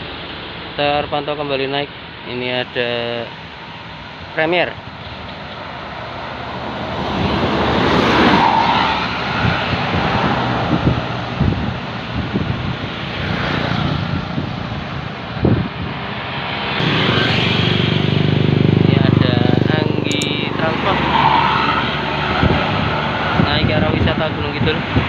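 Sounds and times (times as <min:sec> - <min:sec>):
bus engine under load: 0:01.8 - 0:20.8.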